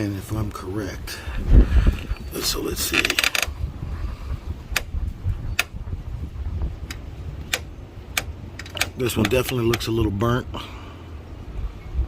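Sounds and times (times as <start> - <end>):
low rumble: 0.2 - 8.6.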